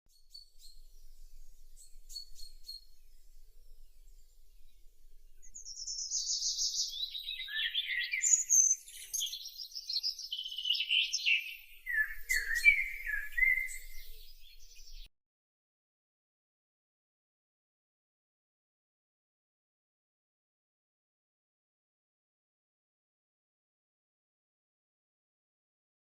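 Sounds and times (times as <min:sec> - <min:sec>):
bird singing chirping notes: 0:00.1 - 0:15.1.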